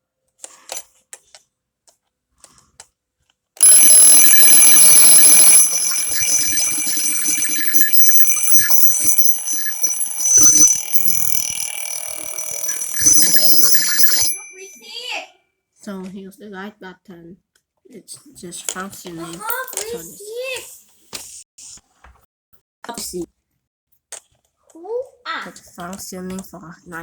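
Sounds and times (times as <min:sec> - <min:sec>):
alarm clock bells ringing: 0:03.6 - 0:15.2.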